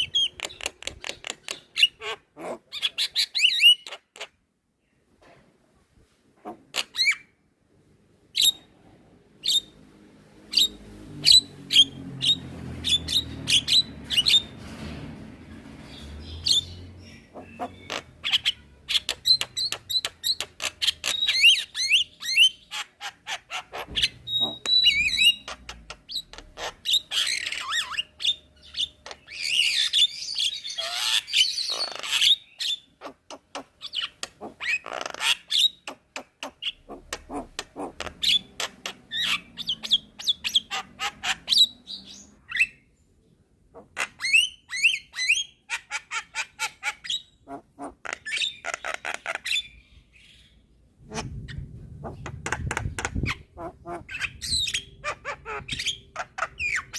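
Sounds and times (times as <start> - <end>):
bird chattering song: 0.0 - 4.4, 15.8 - 42.9, 43.8 - 56.9.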